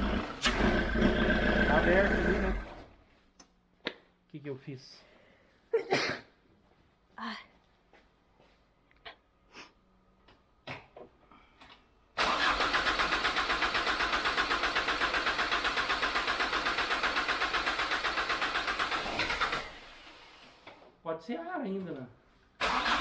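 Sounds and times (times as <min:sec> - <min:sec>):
engine cranking on starter: 0:00.0 - 0:03.0, 0:12.2 - 0:20.7, 0:22.6 - 0:23.0.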